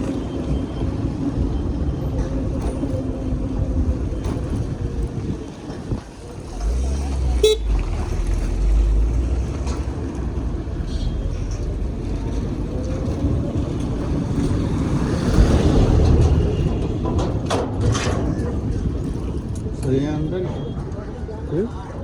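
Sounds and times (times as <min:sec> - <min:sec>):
wind on microphone: 0:00.0 - 0:07.0
scooter ride rumble: 0:00.0 - 0:22.0.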